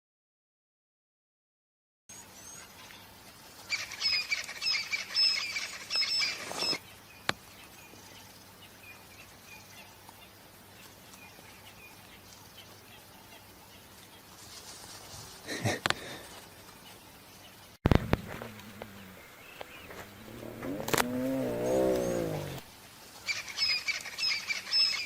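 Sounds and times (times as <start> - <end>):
bird chirping: 3.7 - 14.3, 16.3 - 25.0.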